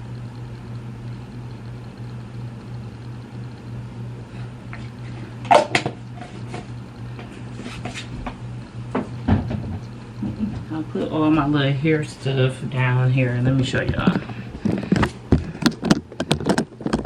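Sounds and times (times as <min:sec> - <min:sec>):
steady low hum: 0:00.0 - 0:17.0
sharp knocks and clatters: 0:08.9 - 0:10.7.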